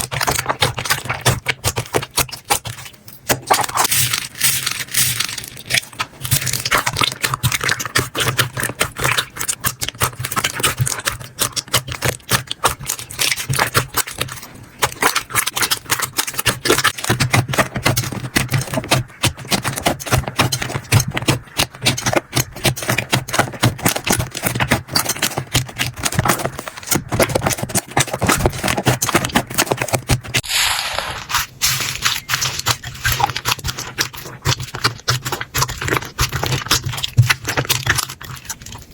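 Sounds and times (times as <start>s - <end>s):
slime squeezed by hand: 30.4s - 33.8s.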